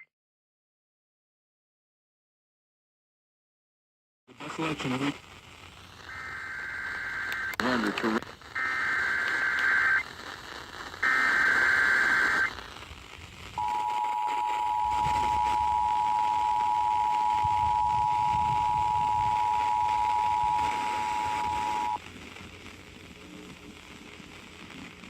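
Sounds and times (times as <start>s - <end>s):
faint radio hiss: 4.3s - 25.0s
screeching digital header burst: 6.1s - 10.1s, 11.0s - 12.5s
two-tone attention signal: 13.6s - 22.0s.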